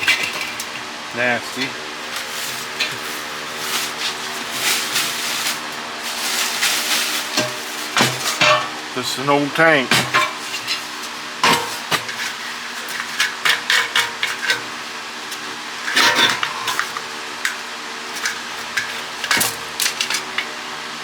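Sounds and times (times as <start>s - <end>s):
steady background hum: 0.0s - 21.0s
metal clanks and knocks: 7.3s - 8.8s, 9.9s - 14.7s.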